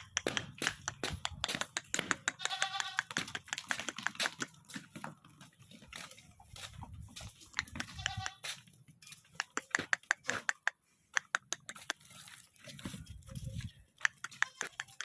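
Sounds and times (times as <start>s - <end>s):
small clicks and taps: 0.0s - 4.6s, 9.3s - 12.1s, 14.0s - 15.0s
goat bleating: 2.2s - 3.5s, 7.6s - 9.2s, 14.2s - 15.0s.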